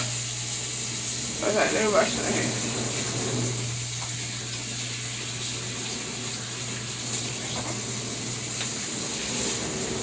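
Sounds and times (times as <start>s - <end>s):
tap running into sink: 5.2s - 10.0s.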